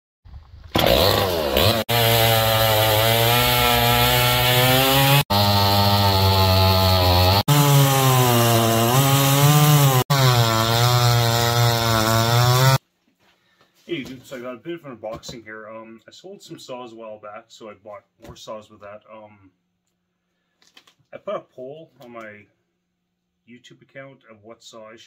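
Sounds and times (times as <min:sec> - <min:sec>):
chainsaw at full throttle: 0:00.7 - 0:12.8.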